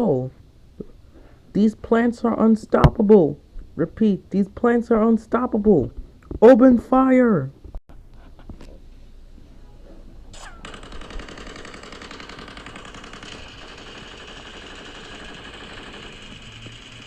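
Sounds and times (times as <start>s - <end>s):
rapid machine-gun fire: 10.6s - 17.0s.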